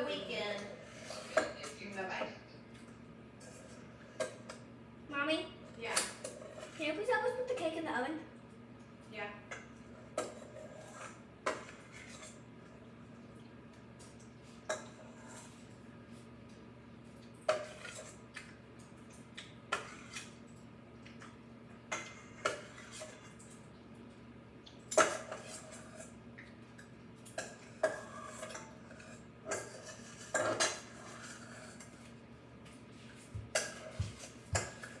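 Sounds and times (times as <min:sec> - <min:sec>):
dishes and utensils clinking: 0:27.2 - 0:32.1, 0:33.4 - 0:35.0.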